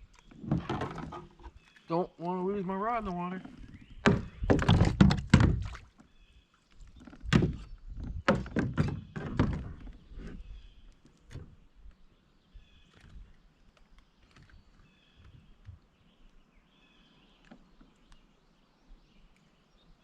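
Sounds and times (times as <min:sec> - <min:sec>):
fishing gear knocking on kayak hull: 0:03.8 - 0:05.8, 0:07.2 - 0:09.9.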